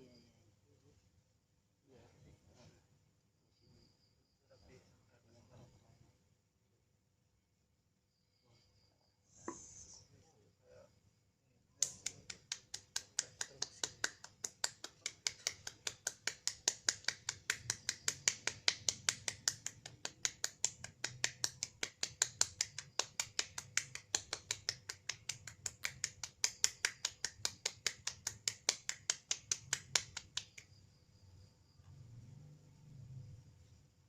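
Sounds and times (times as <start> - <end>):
rapid crisp clicking: 11.8 - 30.7.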